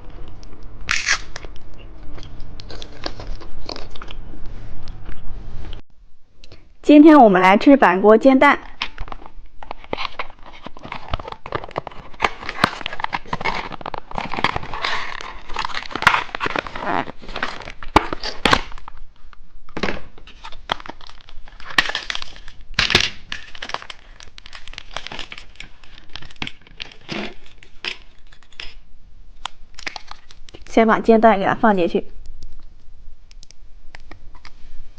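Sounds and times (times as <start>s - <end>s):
plastic packaging crinkling: 8.9s - 19.0s, 20.2s - 28.8s, 29.4s - 30.7s.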